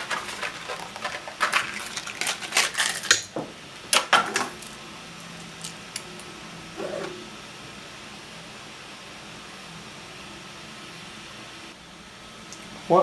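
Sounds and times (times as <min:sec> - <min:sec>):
small hard parts rattling: 0:00.0 - 0:06.3.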